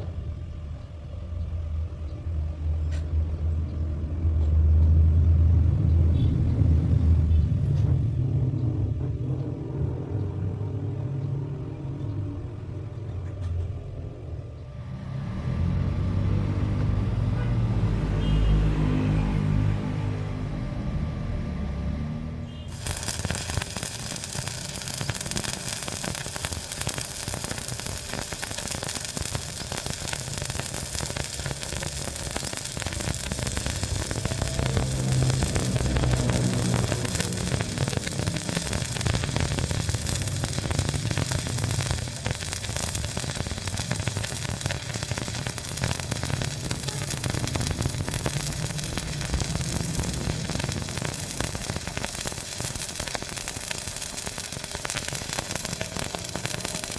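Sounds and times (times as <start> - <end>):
welding arc crackling and sizzling: 14.8 - 18.6, 22.5 - 56.9
low hum: 22.9 - 54.4.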